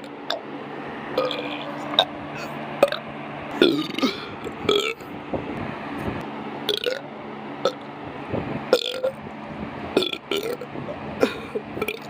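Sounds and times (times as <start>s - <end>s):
person burping: 1.2s - 3.0s, 3.6s - 5.0s, 6.7s - 7.0s, 8.7s - 9.1s, 11.2s - 12.0s.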